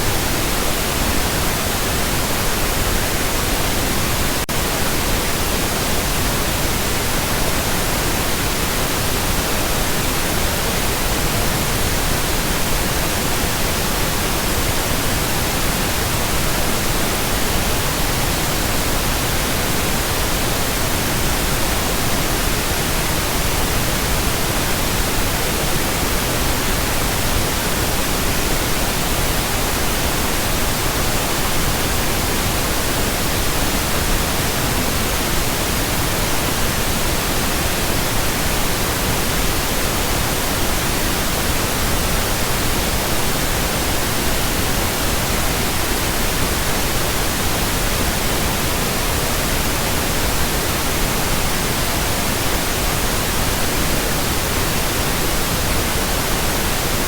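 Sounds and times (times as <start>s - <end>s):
pink noise hiss: 0.0s - 57.0s.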